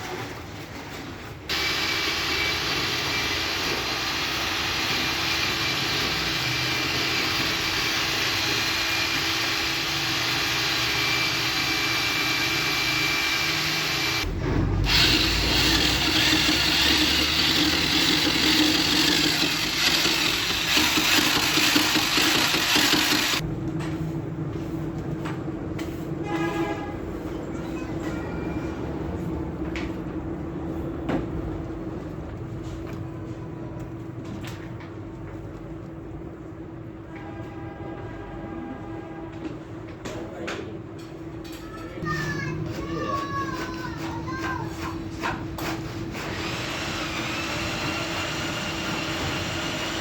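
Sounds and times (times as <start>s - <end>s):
power tool motor running: 1.5s - 23.4s, 46.2s - 50.0s.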